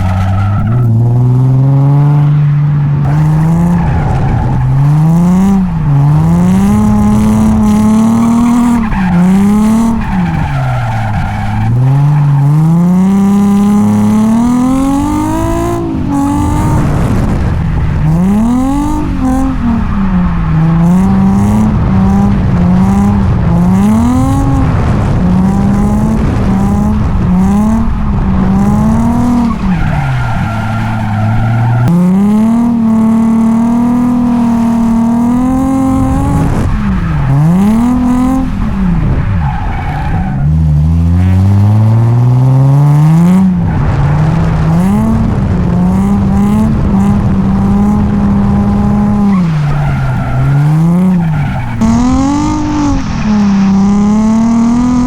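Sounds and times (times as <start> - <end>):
car engine revving: 0.0 - 55.0
tyres squealing: 28.6 - 33.5, 48.9 - 53.4.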